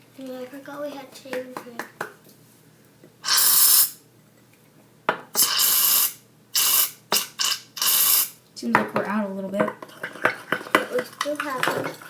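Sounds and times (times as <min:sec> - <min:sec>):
aerosol can spraying: 0:03.2 - 0:04.0, 0:05.4 - 0:08.4.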